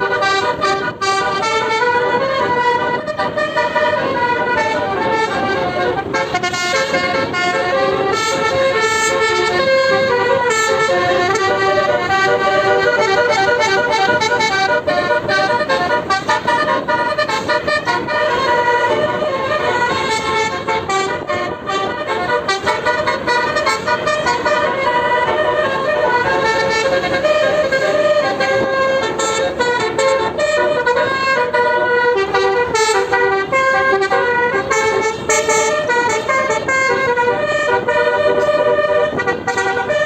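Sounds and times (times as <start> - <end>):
bus melody horn tune: 0.0 - 40.0
bus rumbling on road: 0.0 - 40.0.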